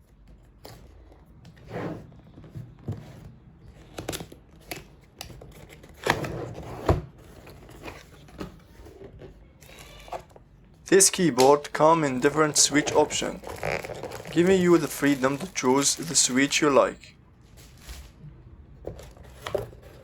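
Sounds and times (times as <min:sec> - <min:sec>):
cardboard packaging rustling: 0:11.0 - 0:18.3.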